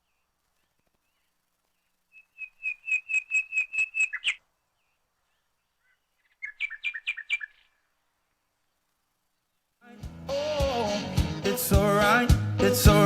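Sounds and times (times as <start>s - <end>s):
songbird whistling: 2.1s - 4.4s, 5.8s - 7.8s.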